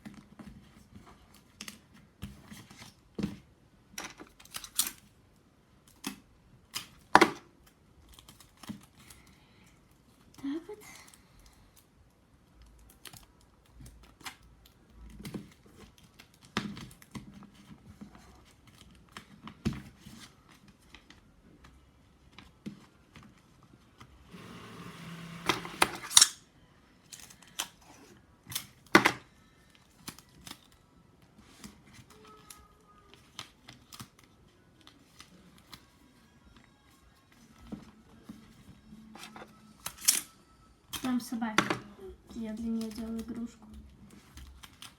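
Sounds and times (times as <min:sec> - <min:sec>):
paper rustling and folding: 0:00.0 - 0:03.5, 0:12.6 - 0:24.5, 0:27.0 - 0:40.3, 0:42.3 - 0:44.9.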